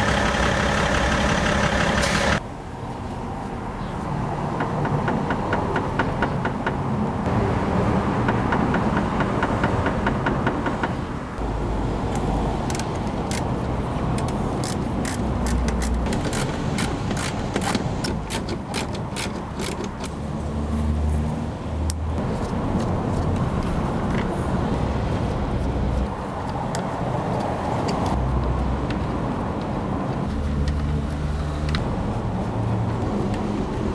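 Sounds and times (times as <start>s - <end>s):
car running: 0.0s - 2.4s, 11.4s - 20.2s
steering rack knocking: 8.4s - 20.1s.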